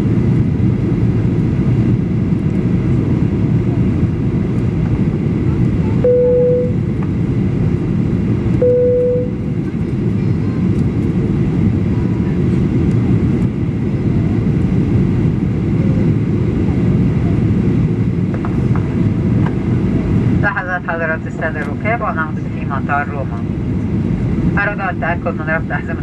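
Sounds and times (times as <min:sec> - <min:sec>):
aircraft cabin engine rumble: 0:00.0 - 0:26.0
short steady tone: 0:06.0 - 0:06.8, 0:08.6 - 0:09.4.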